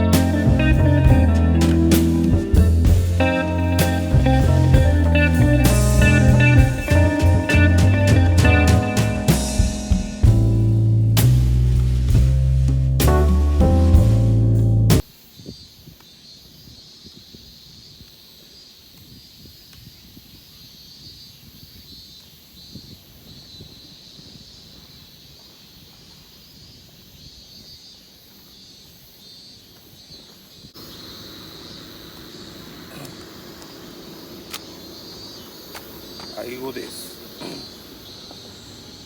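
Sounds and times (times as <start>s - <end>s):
insects trilling: 15.1s - 39.0s.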